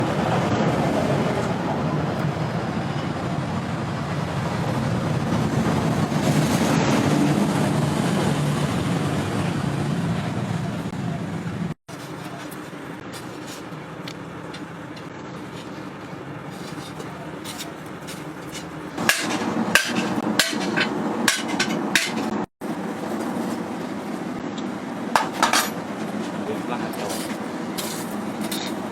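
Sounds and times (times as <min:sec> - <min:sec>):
workshop noise: 0:05.3 - 0:28.9
hammer striking hot metal: 0:11.9 - 0:22.5, 0:25.2 - 0:28.9.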